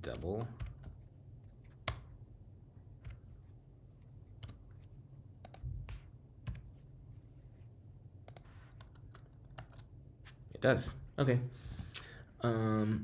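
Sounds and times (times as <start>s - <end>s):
keyboard keystrokes: 0.0s - 1.0s, 1.7s - 2.2s, 4.4s - 4.7s, 5.4s - 6.7s, 8.3s - 9.9s.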